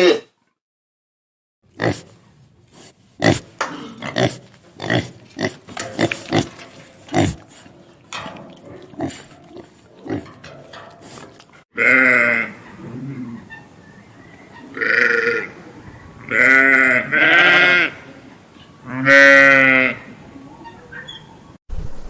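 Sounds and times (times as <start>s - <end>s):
farm animal grunting: 2.8s - 20.8s
drawn-out animal call: 11.8s - 21.6s.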